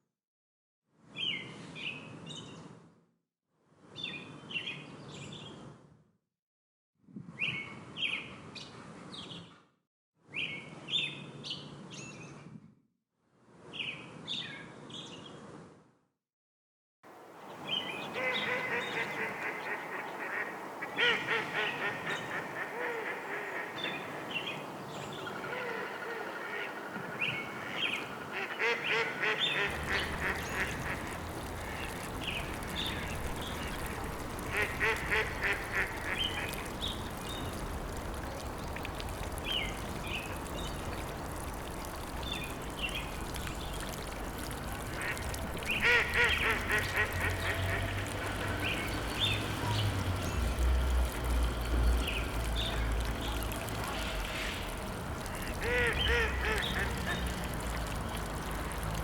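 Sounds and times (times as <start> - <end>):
ducks quacking: 18.1 - 24.3, 25.2 - 38.2, 42.4 - 50.0, 52.3 - 58.0.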